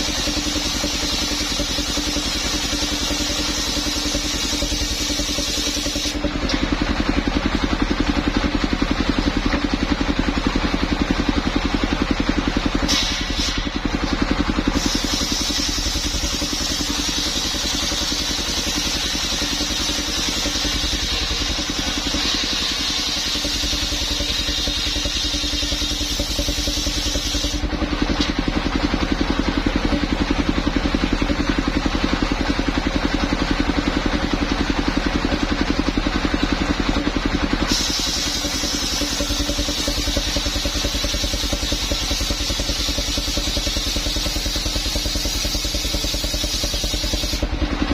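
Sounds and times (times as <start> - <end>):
circular saw machine engine running: 0.0 - 47.9
saw blade cutting wood: 14.7 - 28.3, 37.7 - 47.5.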